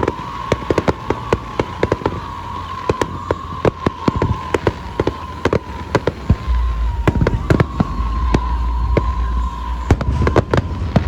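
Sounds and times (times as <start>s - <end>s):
fireworks cracking and banging: 0.0s - 11.0s
deep rumble: 6.3s - 11.0s.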